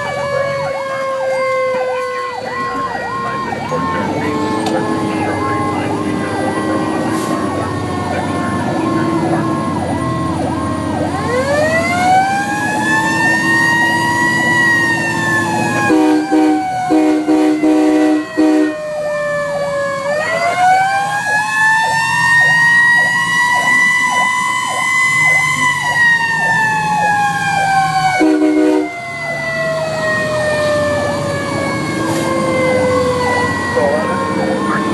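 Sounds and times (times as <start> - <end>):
fast cycling siren tone: 0.0 - 34.9
siren wailing: 0.0 - 34.9
air horn blasts: 15.8 - 18.8, 28.1 - 29.0.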